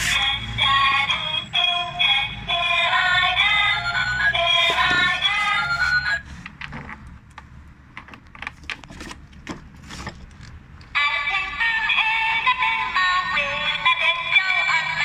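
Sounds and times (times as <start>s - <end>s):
music with synthetic singing: 0.0s - 6.2s, 11.0s - 15.0s.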